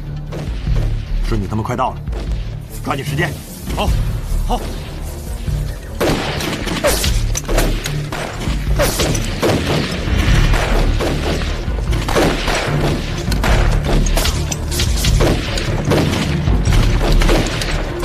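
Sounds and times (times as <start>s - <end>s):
dramatic action film score: 0.0s - 18.0s
booming percussive hits: 3.9s - 18.0s.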